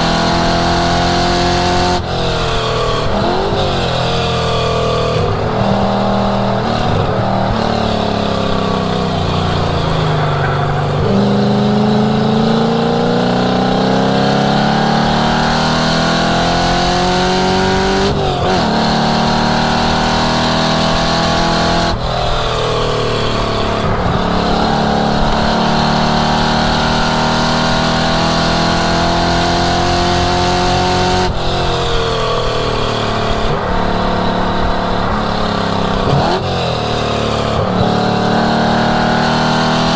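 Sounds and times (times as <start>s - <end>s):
car engine accelerating hard: 0.0s - 39.9s.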